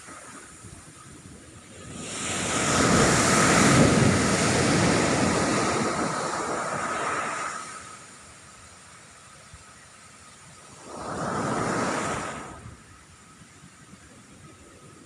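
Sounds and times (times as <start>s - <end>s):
ocean wave breaking on beach: 1.7s - 8.6s, 10.6s - 12.8s.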